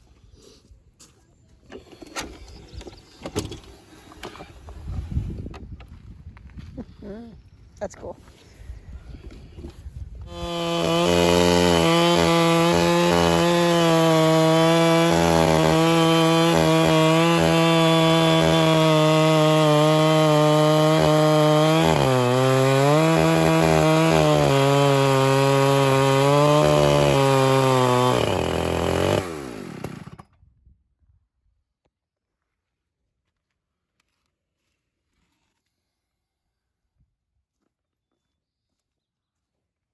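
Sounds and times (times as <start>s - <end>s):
electric chainsaw ripping log: 10.3s - 30.3s.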